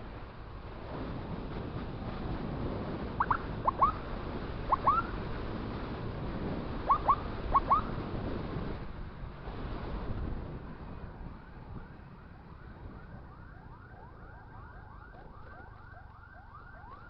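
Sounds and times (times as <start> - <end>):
road and wind noise: 0.0 - 17.0
electronic siren chirps: 3.2 - 4.1, 4.7 - 5.3, 6.8 - 8.0.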